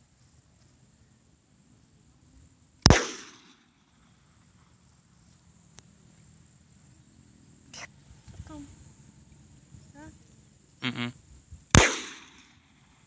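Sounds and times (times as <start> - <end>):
pistol shot with echo: 2.8 - 3.6, 11.7 - 12.7.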